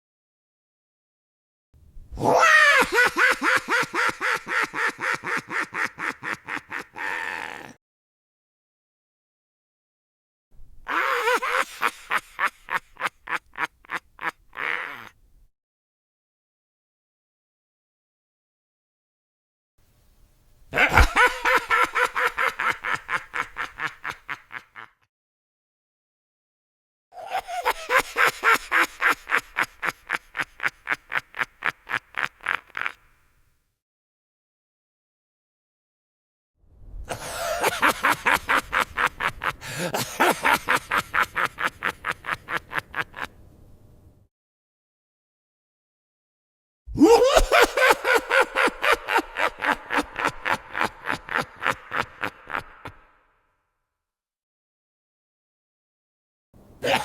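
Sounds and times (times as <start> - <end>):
high-pitched evil cackle: 2.2 - 7.8, 10.9 - 15.2, 20.8 - 25.0, 27.2 - 33.1, 37.1 - 43.4, 47.0 - 53.2.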